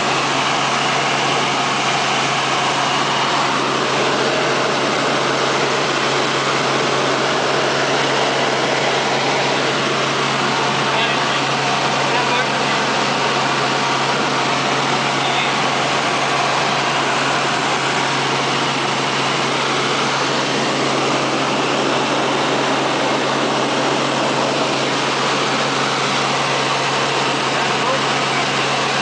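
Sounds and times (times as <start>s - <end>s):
helicopter cabin noise: 0.0s - 29.0s.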